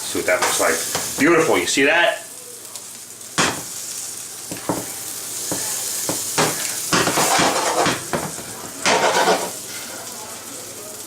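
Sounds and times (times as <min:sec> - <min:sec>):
food sizzling in a frying pan: 0:00.0 - 0:11.0
spatula scraping and tapping pan: 0:04.5 - 0:04.9, 0:05.5 - 0:09.9.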